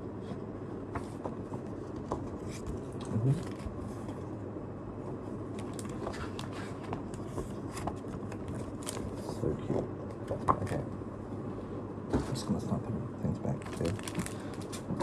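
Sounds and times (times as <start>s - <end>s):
pages rustling: 5.5s - 9.4s, 13.6s - 15.0s.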